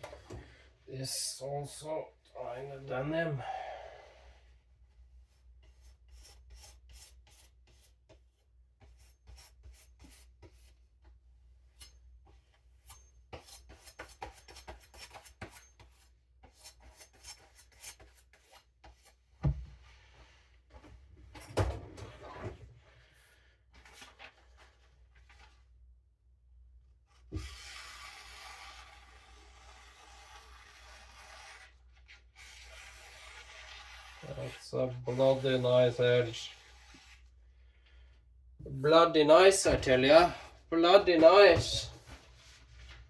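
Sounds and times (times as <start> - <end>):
knife stropping on denim: 32.4 - 34.6.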